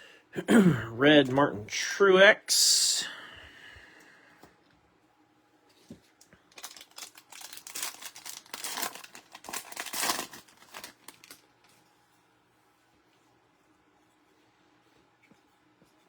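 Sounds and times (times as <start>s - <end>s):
plastic wrapper tearing and crinkling: 6.5s - 11.5s.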